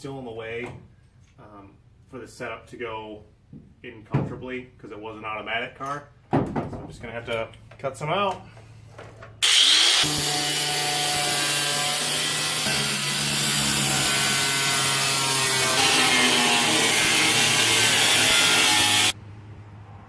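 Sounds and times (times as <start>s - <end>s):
power tool cutting sheet steel: 9.4s - 19.2s.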